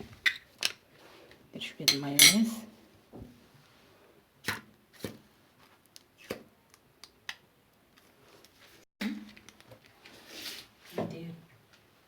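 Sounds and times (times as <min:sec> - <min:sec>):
kitchen utensils clicking and tapping: 0:01.8 - 0:02.5.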